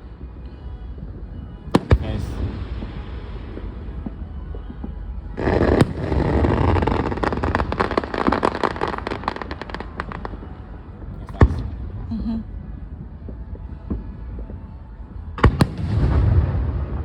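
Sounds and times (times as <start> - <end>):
firework bangs: 1.7 - 10.6, 15.4 - 17.0
firework crackling: 5.4 - 10.7.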